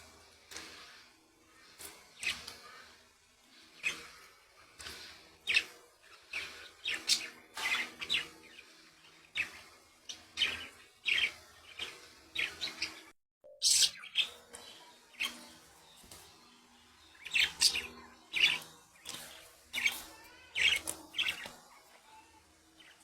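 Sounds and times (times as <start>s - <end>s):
budgerigars chirping: 5.4s - 8.3s, 9.3s - 13.0s, 13.6s - 14.4s.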